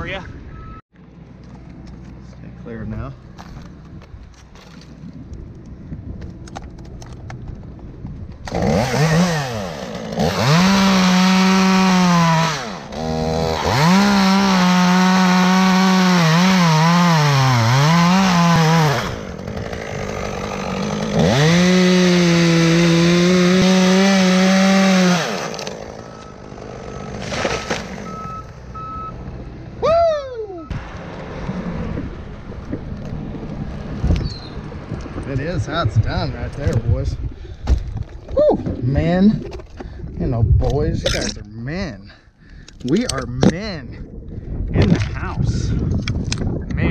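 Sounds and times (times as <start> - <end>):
chainsaw cutting wood: 8.4 - 28.3
chainsaw idling: 8.5 - 27.2.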